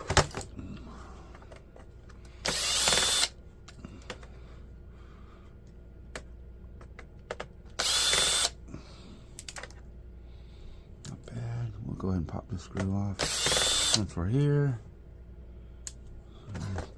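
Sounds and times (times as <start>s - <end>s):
electric drill whirring: 2.4s - 3.4s, 7.8s - 8.6s, 13.2s - 14.0s.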